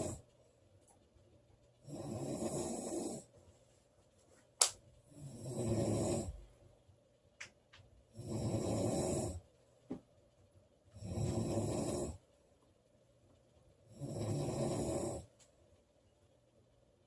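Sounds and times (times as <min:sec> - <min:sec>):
woman snoring: 0:00.0 - 0:00.2, 0:01.9 - 0:03.2, 0:05.1 - 0:06.4, 0:08.1 - 0:09.4, 0:11.0 - 0:12.2, 0:13.9 - 0:15.3.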